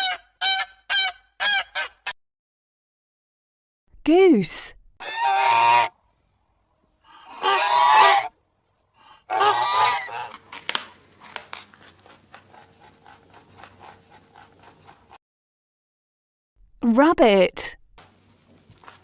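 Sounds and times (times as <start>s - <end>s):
goose honking: 5.0s - 6.0s, 7.1s - 8.3s, 9.0s - 10.4s.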